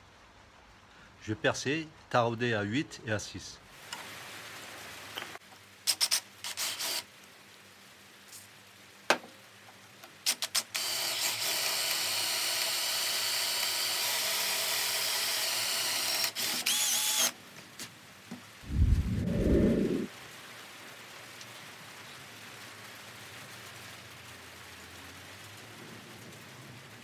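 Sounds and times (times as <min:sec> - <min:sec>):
electric drill running: 0:10.5 - 0:17.4.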